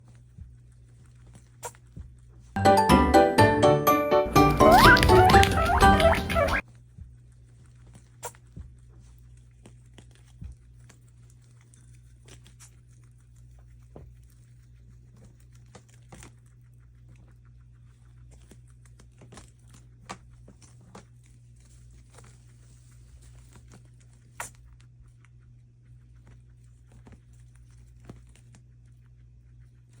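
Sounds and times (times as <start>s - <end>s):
guinea pig sneezing: 8.2s - 8.4s.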